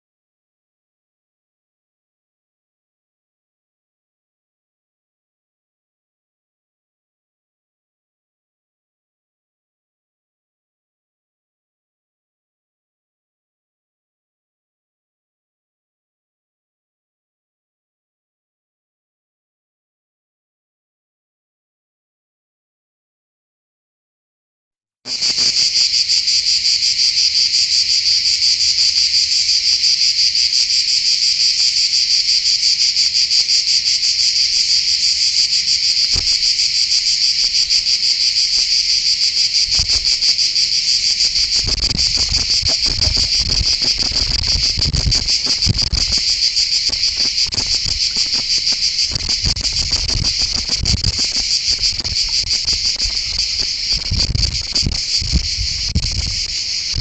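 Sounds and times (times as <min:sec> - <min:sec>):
insect chorus buzzing: 0:25.1 - 0:57.0
low thumps and rumbles: 0:41.5 - 0:57.0.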